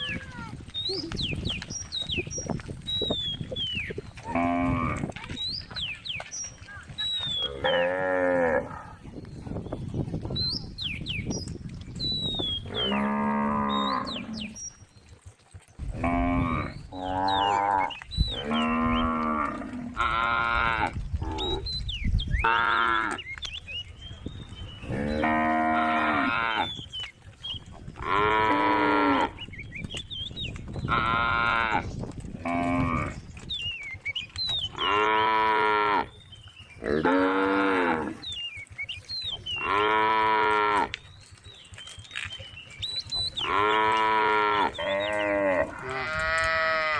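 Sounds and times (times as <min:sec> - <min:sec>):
cows mooing: 0:04.2 - 0:05.1, 0:07.4 - 0:09.0, 0:12.6 - 0:14.6, 0:15.8 - 0:21.7, 0:22.4 - 0:23.2, 0:24.8 - 0:26.8, 0:28.0 - 0:29.4, 0:30.9 - 0:33.2, 0:34.7 - 0:36.2, 0:36.8 - 0:38.3, 0:39.6 - 0:41.0, 0:43.3 - 0:46.9.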